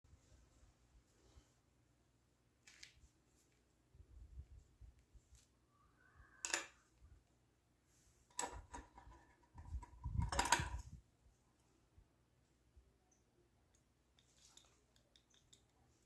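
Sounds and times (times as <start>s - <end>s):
clicks and knocks on hard surface: 8.3s - 10.8s.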